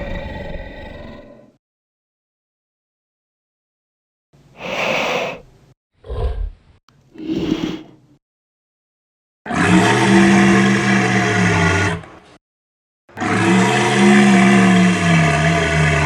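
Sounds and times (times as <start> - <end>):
dinosaur roars: 0.0 - 1.6, 6.0 - 6.6, 9.5 - 12.2, 13.2 - 16.0.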